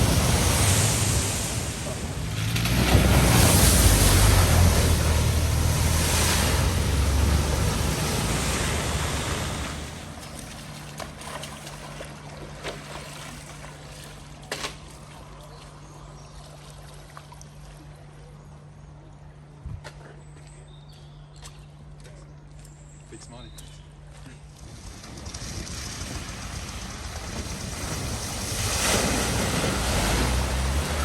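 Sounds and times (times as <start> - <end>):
water splashing: 0.0 - 18.1, 24.6 - 31.0
low hum: 0.0 - 23.1
engine rumble: 0.0 - 31.0.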